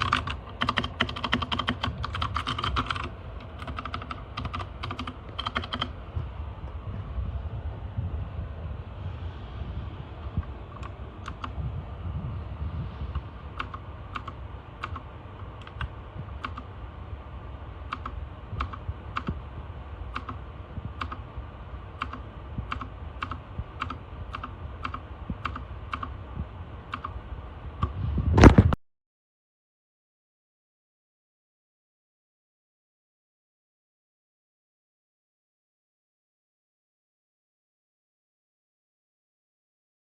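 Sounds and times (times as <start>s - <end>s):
mechanical keyboard key clicks: 0.0s - 5.9s, 13.6s - 15.0s, 15.6s - 16.6s, 17.9s - 19.4s, 20.1s - 20.4s, 22.0s - 26.1s, 26.9s - 27.1s
steady low hum: 0.0s - 28.8s.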